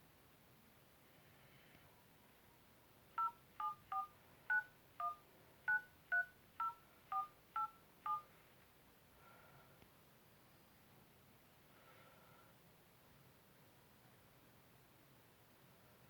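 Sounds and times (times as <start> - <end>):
phone keypad two-tone beeps: 3.2 - 8.2.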